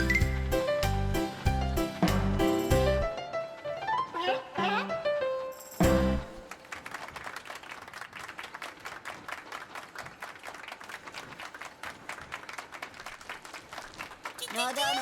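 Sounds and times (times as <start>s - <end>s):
crowd applauding: 6.4s - 15.0s.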